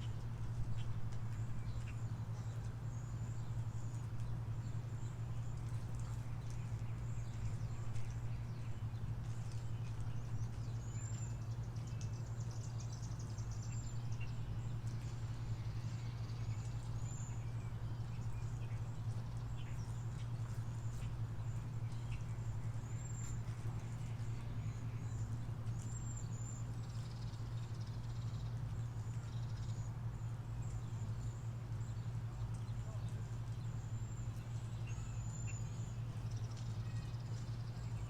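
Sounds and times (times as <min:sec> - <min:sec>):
birds chirping: 0:00.0 - 0:38.0
steady low hum: 0:00.0 - 0:38.0.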